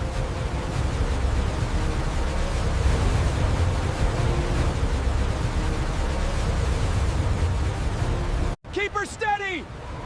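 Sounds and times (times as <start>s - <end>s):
storm wind rushing: 0.0s - 8.5s
rough sea low rumble: 0.0s - 8.6s.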